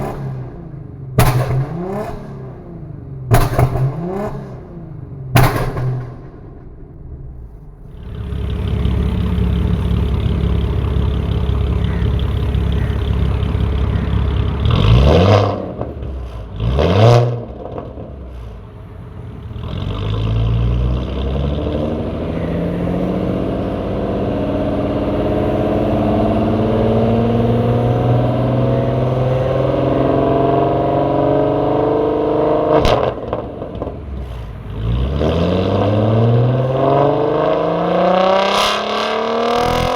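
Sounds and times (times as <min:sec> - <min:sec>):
sharp exhaust crack: 0:00.0 - 0:16.6
car engine revving: 0:00.0 - 0:39.9.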